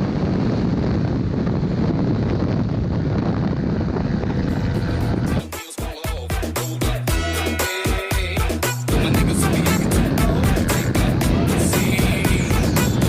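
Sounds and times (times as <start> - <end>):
wind buffeting microphone: 0.0 - 5.4, 8.9 - 13.0
music: 4.6 - 13.0.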